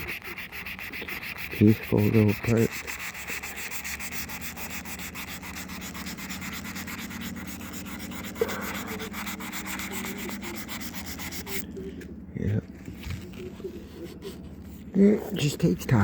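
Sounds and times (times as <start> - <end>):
sandpaper rasping on metal: 0.0 - 11.6.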